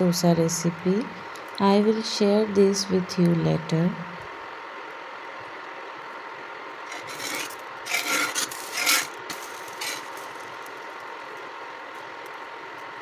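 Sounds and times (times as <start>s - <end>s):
induction cooktop hum: 0.0s - 13.0s
spatula scraping an iron griddle: 6.9s - 10.8s.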